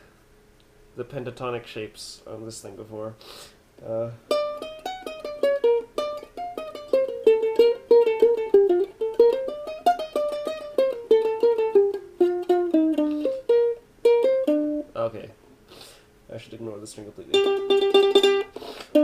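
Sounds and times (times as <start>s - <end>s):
ukulele plucked single notes: 4.3s - 14.9s, 17.3s - 19.0s.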